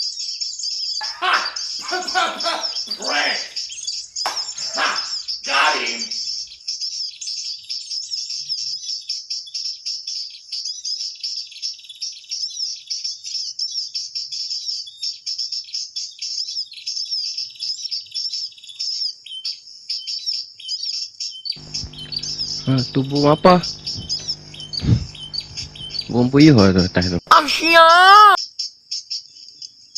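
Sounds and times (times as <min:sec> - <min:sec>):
bird chirps and trills: 0:01.0 - 0:09.0, 0:21.6 - 0:26.3.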